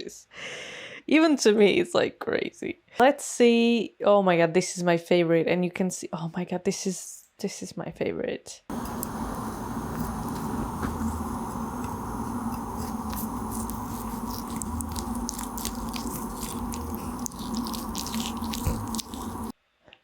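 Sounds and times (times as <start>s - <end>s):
crunchy chewing: 8.7s - 19.5s
low hum: 8.7s - 19.5s.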